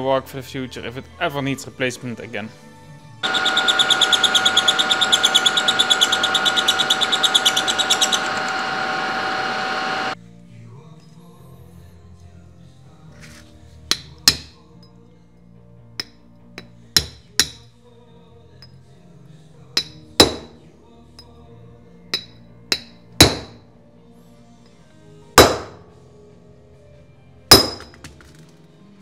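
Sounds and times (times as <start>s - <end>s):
hammer striking steel: 3.2s - 9.0s, 19.8s - 20.6s, 22.2s - 23.6s, 25.4s - 25.8s, 27.5s - 28.0s.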